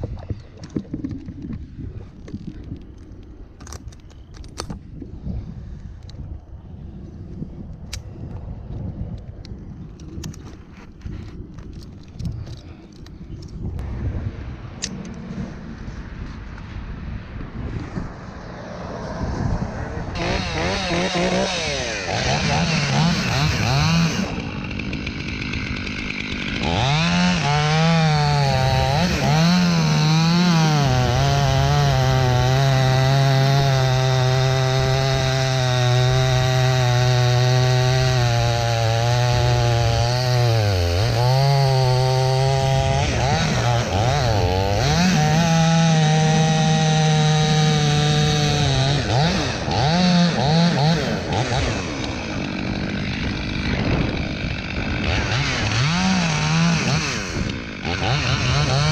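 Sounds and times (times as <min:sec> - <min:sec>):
chainsaw cutting wood: 0:20.1 - 0:58.9.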